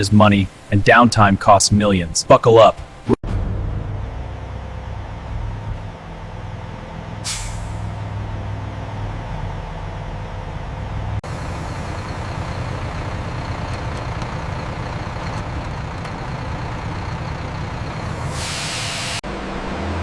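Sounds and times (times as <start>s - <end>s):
sawmill machinery droning: 10.6s - 20.0s
air hissing: 18.2s - 19.2s.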